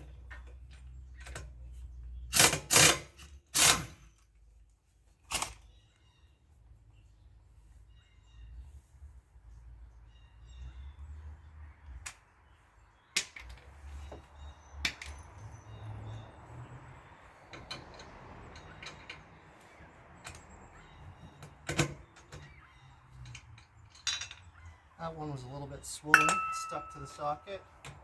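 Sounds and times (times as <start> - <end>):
metal clicks and clanks: 17.5 - 19.5, 20.2 - 24.6.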